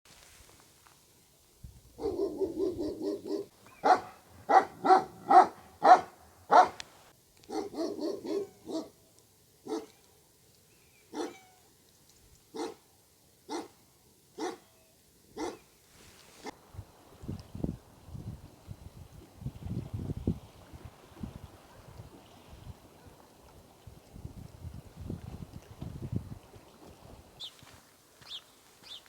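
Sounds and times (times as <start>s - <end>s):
dog barking and yapping: 2.0s - 6.8s, 7.5s - 8.9s, 9.7s - 10.0s, 11.1s - 11.5s, 12.6s - 12.8s, 13.5s - 13.8s, 14.4s - 14.7s, 15.4s - 15.6s.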